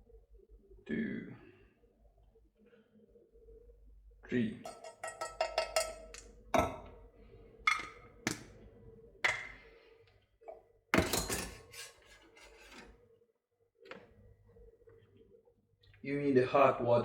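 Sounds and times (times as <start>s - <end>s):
utensils clattering: 4.7s - 6.3s, 11.0s - 12.9s
kitchen utensils knocking: 4.7s - 6.9s, 7.7s - 8.5s, 9.2s - 9.6s, 11.0s - 12.8s.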